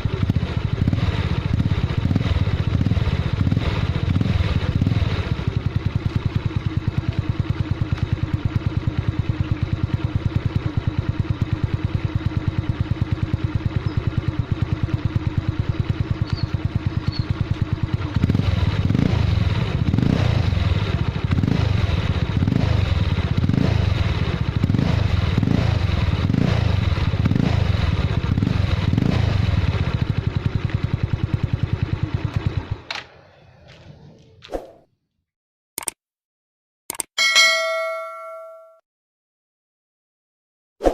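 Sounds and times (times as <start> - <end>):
scooter engine throttle blips: 0.0 - 20.0
scooter engine idling: 0.0 - 34.1.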